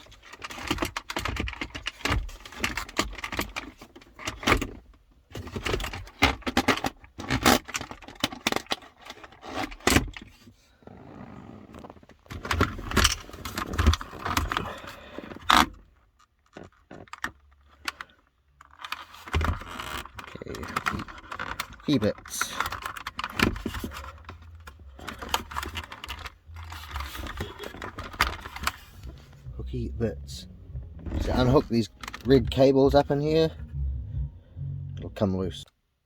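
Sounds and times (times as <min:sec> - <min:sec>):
plastic trim clicks and rattles: 0:00.0 - 0:10.3, 0:15.3 - 0:29.2
plastic scraping: 0:18.7 - 0:33.8.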